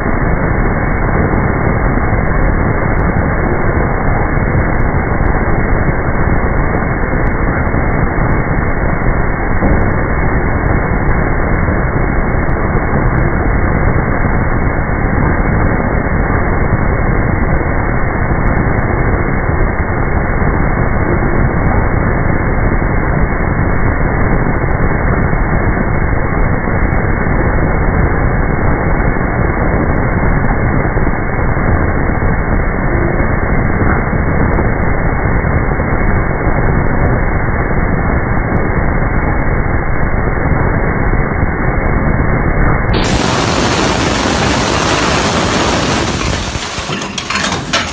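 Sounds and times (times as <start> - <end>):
forging machine running: 43.0 - 47.9.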